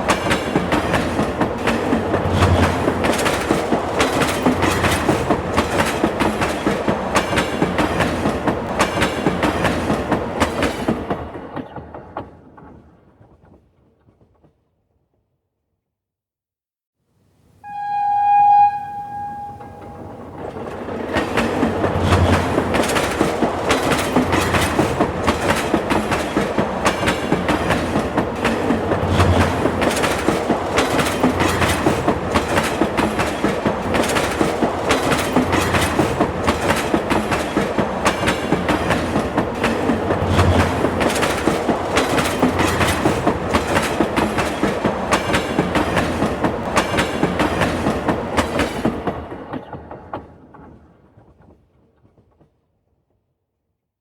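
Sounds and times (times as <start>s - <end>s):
train wheels clickety-clack: 0.0s - 14.6s, 20.4s - 53.0s
train horn: 17.6s - 20.5s.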